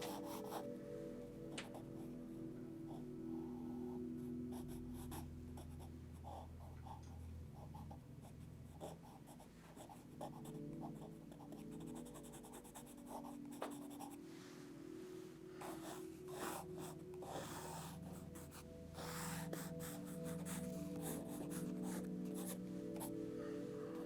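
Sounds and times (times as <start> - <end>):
pencil scratching on paper: 0.0 - 0.7, 4.5 - 7.0, 7.6 - 14.2, 15.6 - 23.2.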